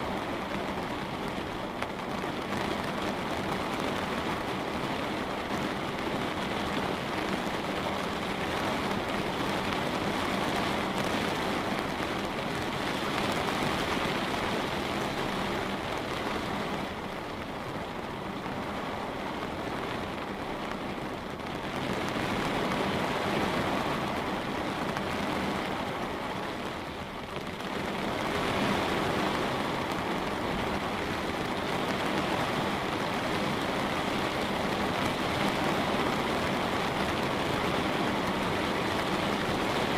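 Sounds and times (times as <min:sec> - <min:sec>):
light rain on a window: 0:00.0 - 0:39.9.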